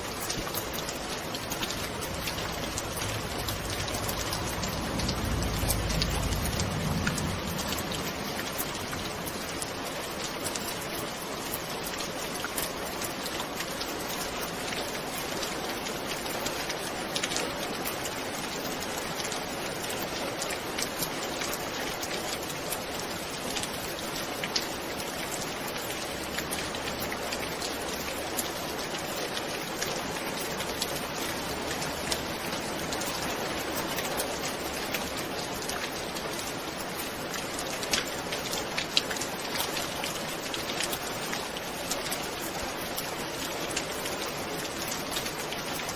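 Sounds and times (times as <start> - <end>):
steady rain falling: 0.0 - 45.9
low rumble: 1.6 - 9.6.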